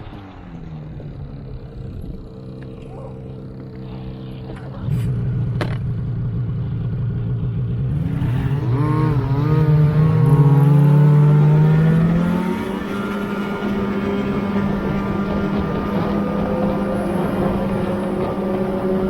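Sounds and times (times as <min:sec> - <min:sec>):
snowmobile engine revving: 0:07.8 - 0:19.0.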